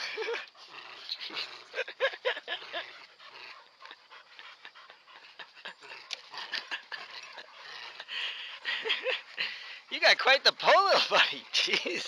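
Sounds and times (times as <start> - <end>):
dog panting: 0.0 - 12.0.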